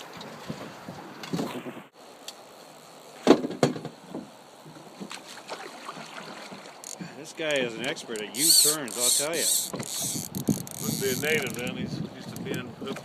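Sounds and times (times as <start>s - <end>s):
knocks in a boat: 3.2s - 5.2s.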